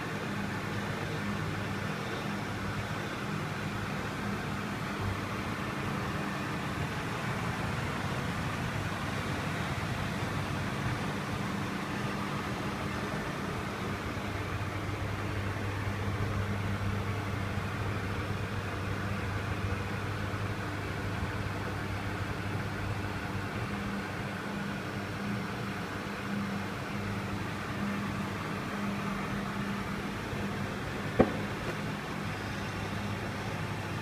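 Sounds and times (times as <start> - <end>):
milling machine humming: 22.1 - 34.0.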